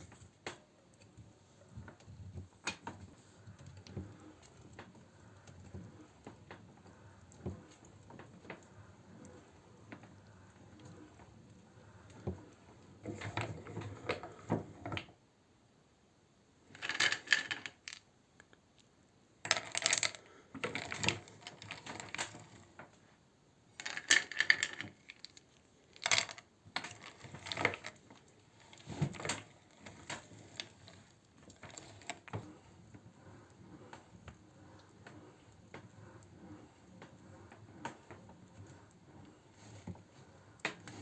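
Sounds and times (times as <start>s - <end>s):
hard candy crunching in grinder: 19.5s - 22.6s.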